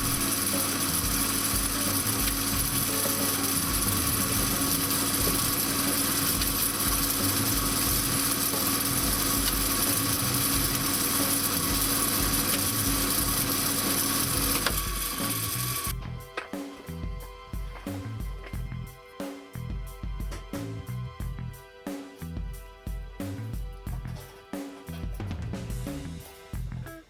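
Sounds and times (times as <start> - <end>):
coil-winding machine motor hum: 0.0 - 16.1.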